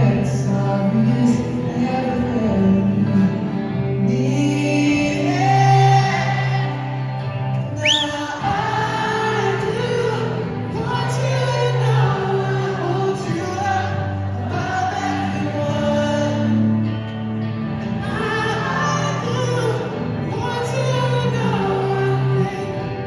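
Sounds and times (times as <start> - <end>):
live band with choir-like vocals: 0.0 - 23.0
rising whistle-like squeal: 7.8 - 8.3.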